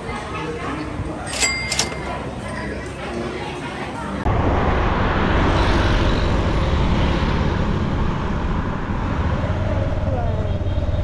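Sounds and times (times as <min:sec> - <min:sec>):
motorcycle road noise: 0:04.3 - 0:11.0.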